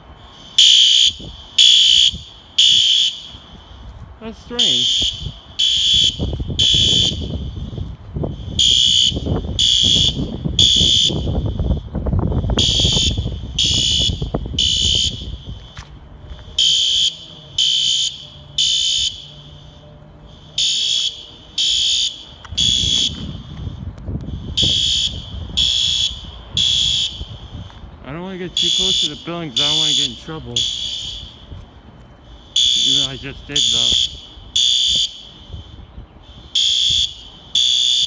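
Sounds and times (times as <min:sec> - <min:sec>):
fire alarm horn blasts: 0:00.0 - 0:38.0.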